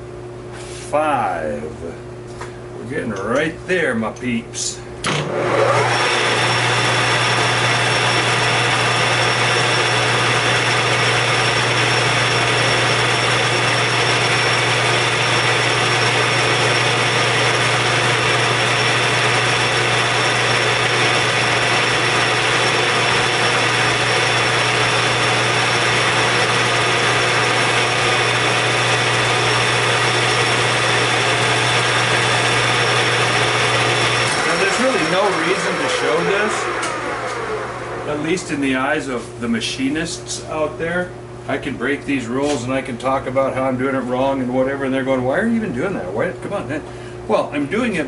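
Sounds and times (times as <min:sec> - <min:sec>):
metal lathe running: 0:05.1 - 0:39.4.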